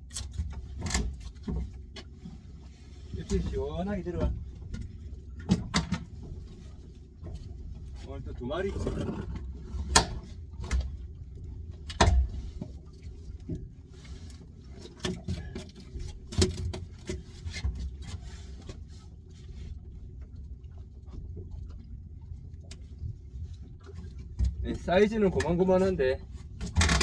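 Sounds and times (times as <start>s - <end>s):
boat engine humming: 0.0s - 27.0s
knocks and clatter on board: 4.2s - 6.5s, 11.8s - 12.8s, 14.8s - 18.8s, 26.6s - 27.0s.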